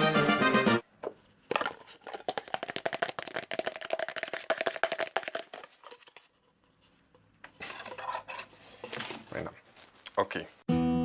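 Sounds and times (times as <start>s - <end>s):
music: 0.0s - 0.8s, 10.7s - 11.0s
paint bottle rattling: 1.4s - 7.0s.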